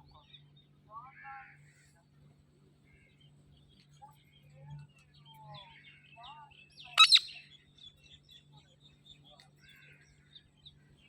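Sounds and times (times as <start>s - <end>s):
parrot chirping: 7.0s - 7.3s
parrot squawks: 7.0s - 7.3s.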